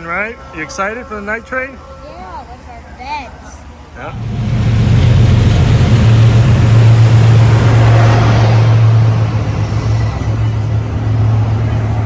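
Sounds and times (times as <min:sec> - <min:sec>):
diesel engine drone: 0:00.0 - 0:12.0
train rumble: 0:00.0 - 0:12.0.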